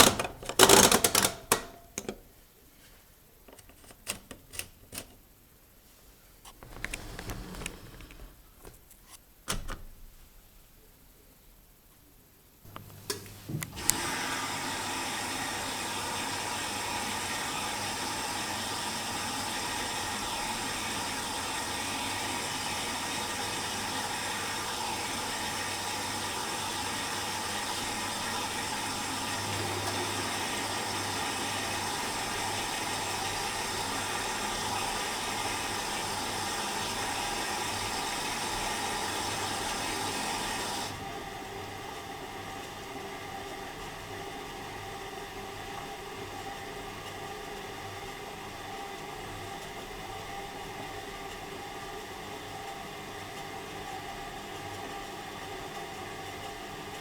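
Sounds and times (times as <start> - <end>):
washing machine filling with water: 0.0 - 1.9, 13.4 - 57.0.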